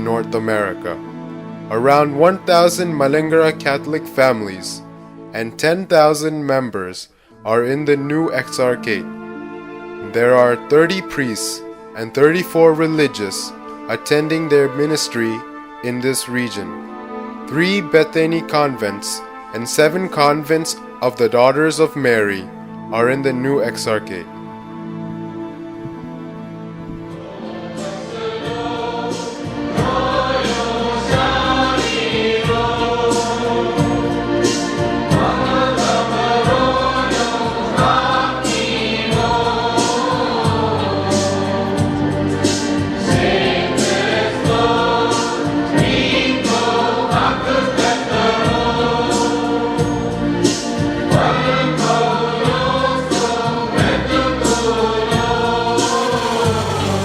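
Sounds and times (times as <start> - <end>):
choir singing a hymn: 27.1 - 57.0.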